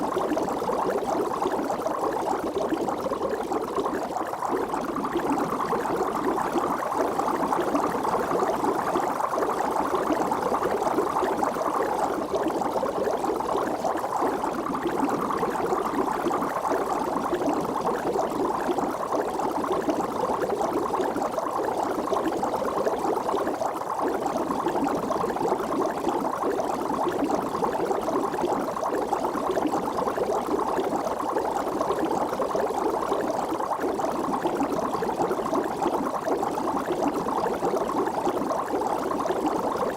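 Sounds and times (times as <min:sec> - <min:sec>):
water bubbling: 0:00.0 - 0:39.9.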